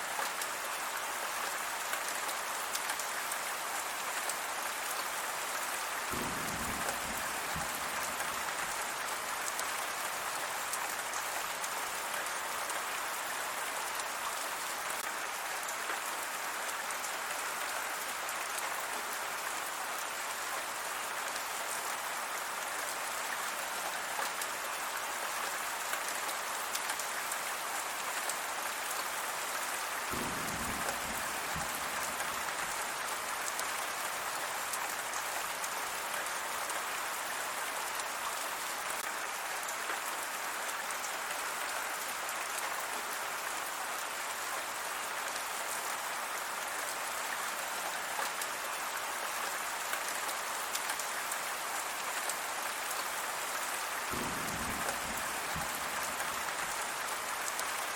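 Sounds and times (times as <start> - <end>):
steady rain falling: 0.0 - 57.9.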